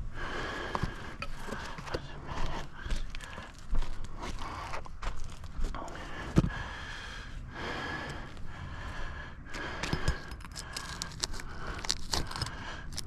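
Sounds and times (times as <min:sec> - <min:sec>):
shingles tearing: 0:10.4 - 0:13.0.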